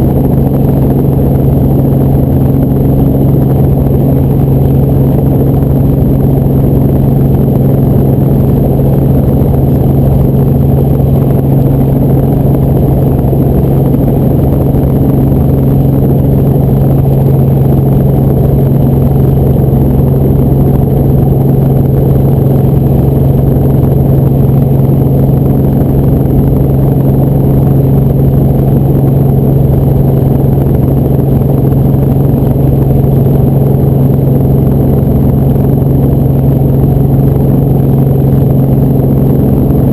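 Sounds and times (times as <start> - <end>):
helicopter engine and rotors: 0.0 - 39.9.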